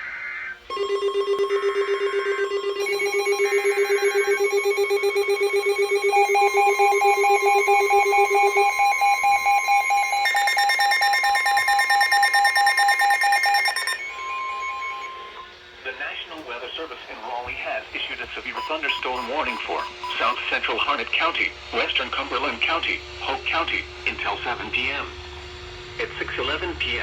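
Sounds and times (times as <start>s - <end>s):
warbling data bursts: 0.0s - 15.4s
weather radio alert alarms: 0.7s - 15.5s, 18.4s - 20.6s.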